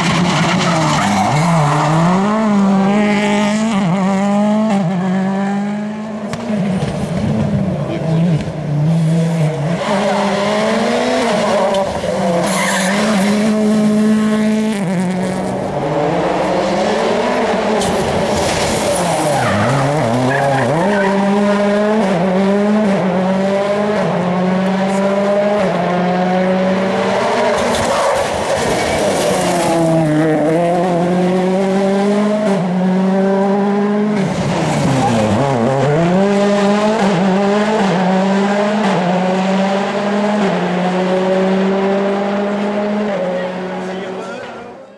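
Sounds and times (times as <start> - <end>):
rally car engines revving: 0.0 - 44.9
tyre noise on tarmac: 27.4 - 30.3.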